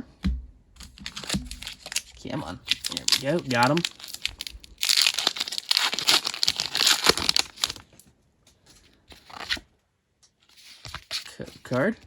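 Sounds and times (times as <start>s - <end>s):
foil wrapper crinkling and tearing: 0.8s - 8.0s.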